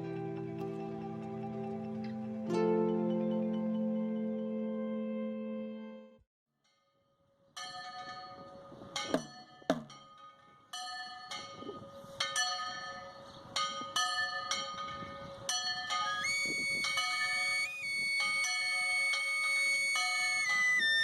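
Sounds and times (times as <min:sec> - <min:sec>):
bells ringing: 0:07.6 - 0:21.0.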